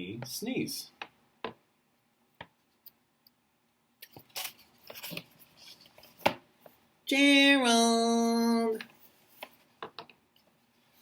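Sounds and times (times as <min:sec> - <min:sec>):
book pages turning: 0:04.0 - 0:06.4.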